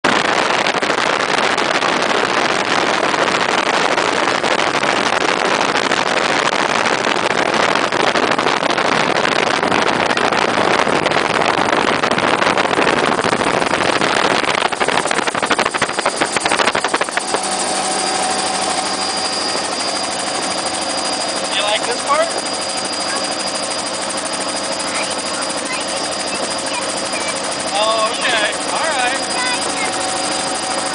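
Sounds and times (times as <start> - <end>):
helicopter rushing noise: 0.1 - 30.9
steady whining tones: 0.2 - 30.9
rotor beats chopping: 11.2 - 30.9.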